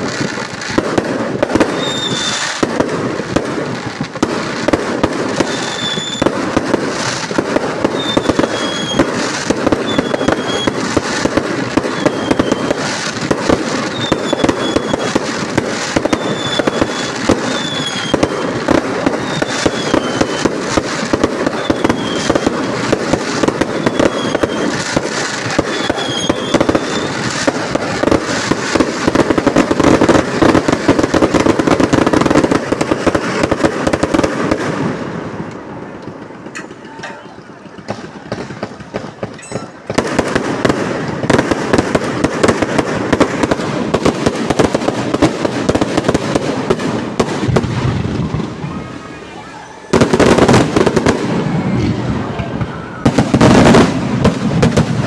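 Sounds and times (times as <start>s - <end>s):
fireworks and firecrackers crackling: 0.0s - 55.0s
falling firework whistles: 1.4s - 2.6s, 4.6s - 34.2s, 46.6s - 54.8s.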